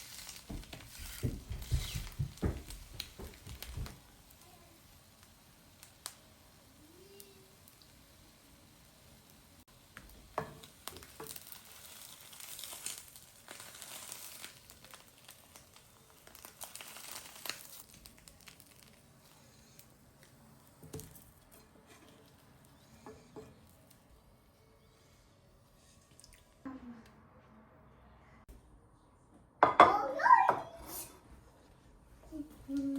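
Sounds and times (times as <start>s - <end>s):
packaging crinkling and rustling: 0.0s - 4.0s, 10.6s - 20.3s.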